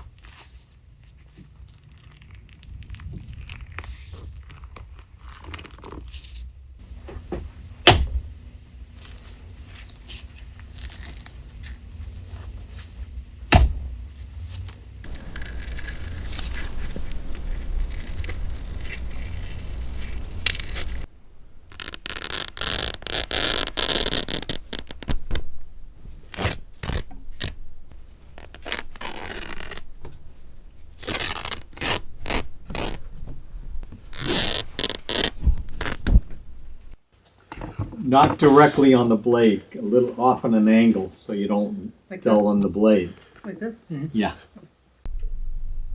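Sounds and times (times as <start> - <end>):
sharp knock: 7.9 - 8.3, 13.5 - 13.9
knife scraping: 14.6 - 25.0
knife cuts and stabs: 15.1 - 21.1.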